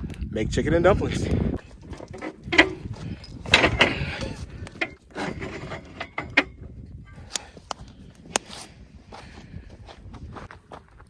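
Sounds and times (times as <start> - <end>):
scraping: 1.6 - 7.4.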